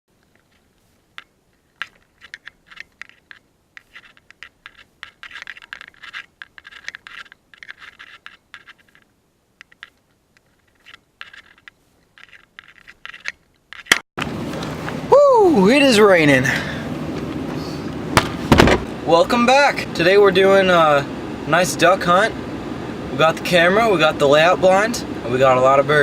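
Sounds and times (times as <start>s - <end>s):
scratching and rustling: 0.1s - 15.0s.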